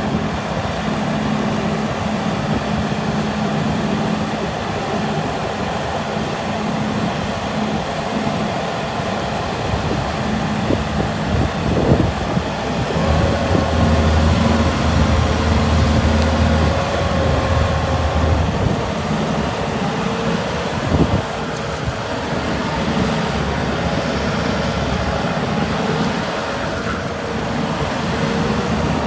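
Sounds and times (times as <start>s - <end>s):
steady engine whine: 10.2s - 29.0s
diesel engine running: 10.4s - 29.0s.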